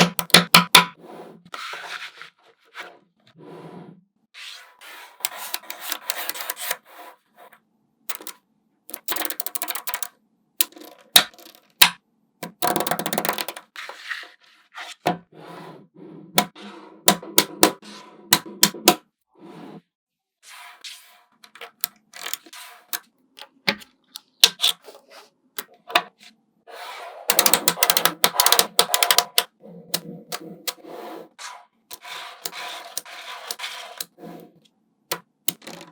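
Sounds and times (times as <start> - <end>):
magnetic balls clicking and rattling: 8.1 - 13.7, 21.6 - 22.5, 27.3 - 29.5, 35.1 - 35.9.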